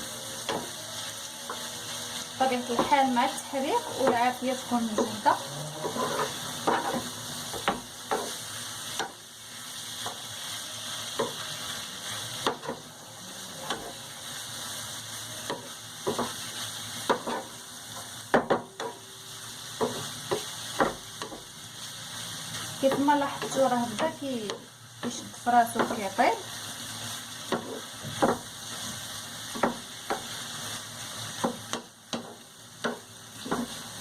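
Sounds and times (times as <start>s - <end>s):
shrimp sizzling in hot oil: 0.0s - 34.0s
utensil scraping a frying pan: 0.4s - 12.8s, 13.4s - 34.0s.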